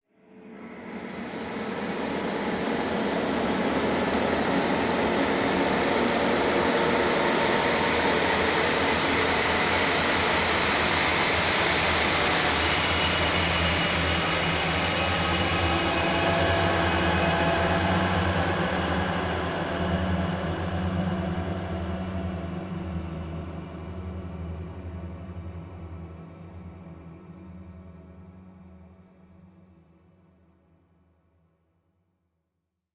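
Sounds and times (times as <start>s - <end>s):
faint sustained tones: 1.4s - 24.8s
rushing hissing drone: 2.2s - 23.8s.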